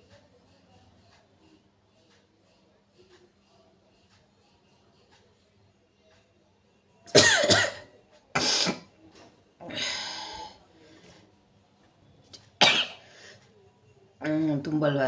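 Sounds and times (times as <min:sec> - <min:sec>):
woman sneezing and coughing: 0:07.2 - 0:07.8, 0:08.4 - 0:08.9, 0:12.6 - 0:13.0.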